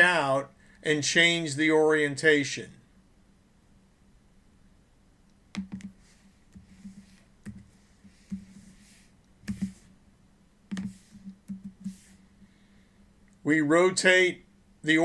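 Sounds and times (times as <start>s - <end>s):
sharp computer clicks: 5.5s - 6.6s.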